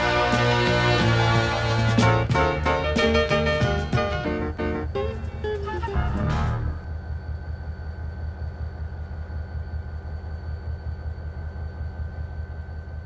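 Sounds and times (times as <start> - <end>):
music: 0.0 - 6.9
high whine: 0.0 - 8.0
freight train rumbling: 0.0 - 13.0.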